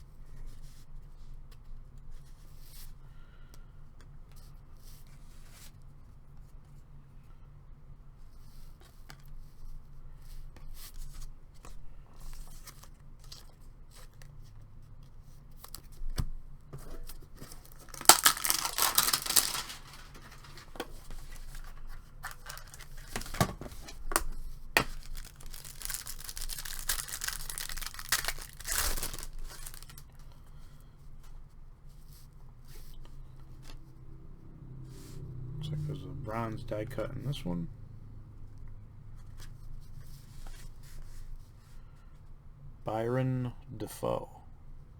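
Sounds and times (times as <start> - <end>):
wrapper being torn open: 17.3 - 30.1.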